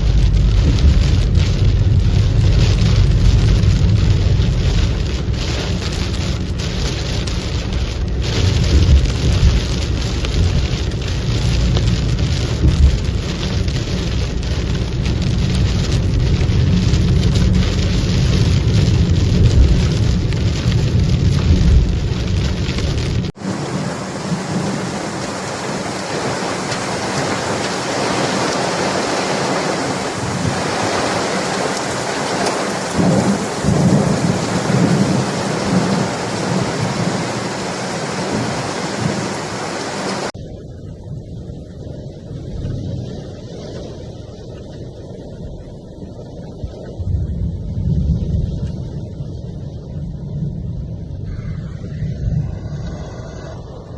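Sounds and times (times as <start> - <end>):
deep uneven rumble: 0.0 - 25.4, 40.1 - 53.9
heavy rain rushing: 0.0 - 53.9
hissing downpour: 0.0 - 53.9.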